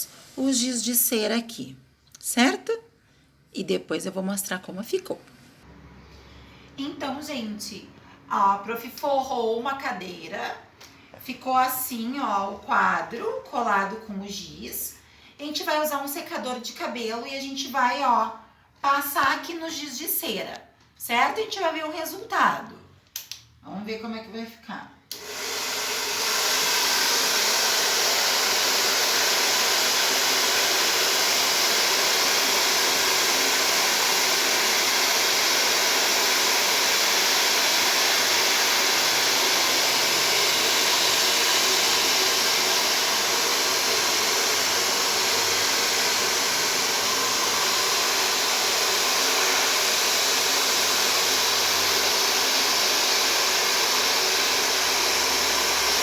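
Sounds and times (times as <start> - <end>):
hair dryer blowing: 25.1 - 56.0.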